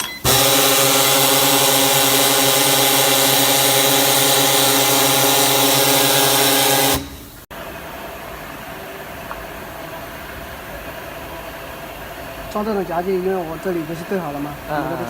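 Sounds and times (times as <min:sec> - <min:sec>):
sanding machine humming with hiss: 0:00.3 - 0:07.1.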